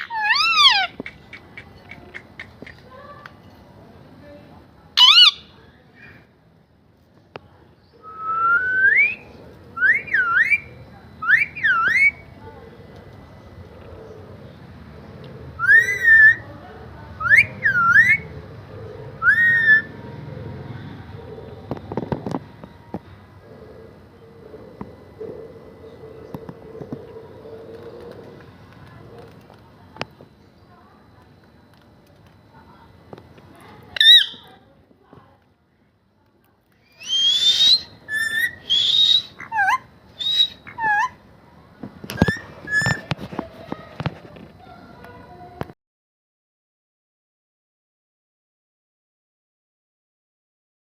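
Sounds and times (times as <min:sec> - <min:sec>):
parrot whistling: 0:00.0 - 0:00.9, 0:05.0 - 0:05.4, 0:15.6 - 0:16.4, 0:19.2 - 0:19.9, 0:34.0 - 0:34.5, 0:36.9 - 0:41.2.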